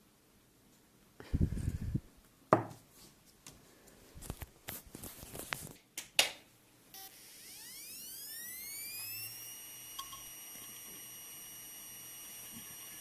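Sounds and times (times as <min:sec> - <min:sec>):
hard drive spinning up whine: 0:06.9 - 0:13.0.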